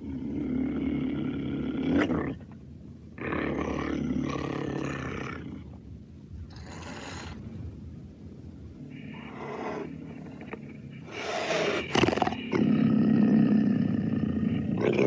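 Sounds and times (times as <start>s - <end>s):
cougar growling: 0.0s - 5.8s, 6.4s - 7.4s, 8.8s - 15.0s
cougar hissing: 6.5s - 7.4s, 9.2s - 10.4s, 11.0s - 14.2s.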